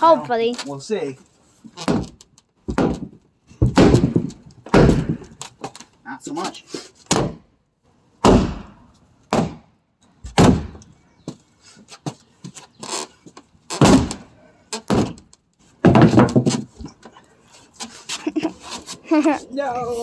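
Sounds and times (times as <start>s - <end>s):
walls being smashed with thuds: 1.8s - 5.4s, 7.1s - 7.5s, 8.2s - 10.8s, 13.8s - 16.8s.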